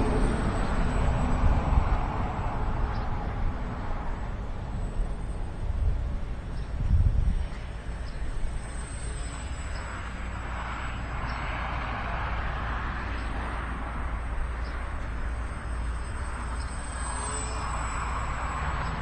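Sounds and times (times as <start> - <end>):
wind rumbling on microphone: 0.0 - 8.7
model plane motor buzzing: 0.0 - 19.0.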